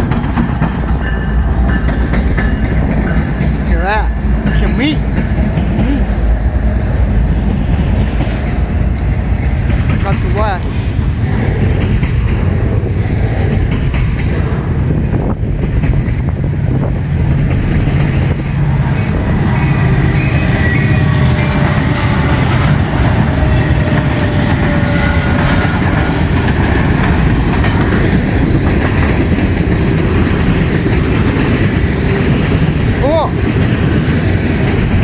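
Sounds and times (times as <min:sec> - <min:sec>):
train wheels rumbling on rail: 0:00.0 - 0:35.0
thin wheel squeals: 0:19.6 - 0:22.2.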